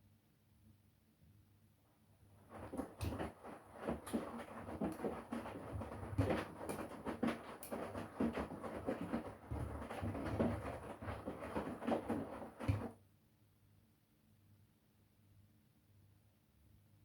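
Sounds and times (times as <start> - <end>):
laundry sloshing and thumping: 2.4 - 13.0
washing machine drum tumbling: 2.5 - 13.0.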